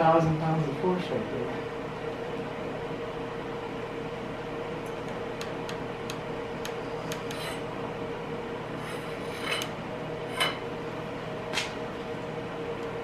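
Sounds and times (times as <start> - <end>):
steady hum: 0.0 - 13.0
metal scraping on metal: 7.3 - 7.6, 8.8 - 9.7.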